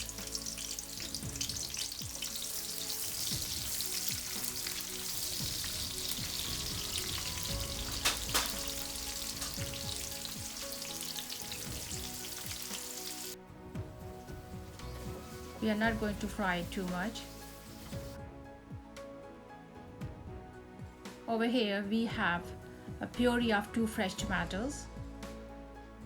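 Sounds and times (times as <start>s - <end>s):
onion sizzling in pan: 0.0s - 18.2s
sharp knocks: 7.5s - 9.9s.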